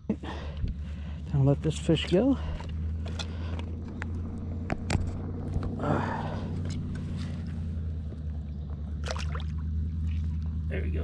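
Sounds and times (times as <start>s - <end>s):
low motor hum: 0.0s - 11.0s
water splash: 9.0s - 10.4s.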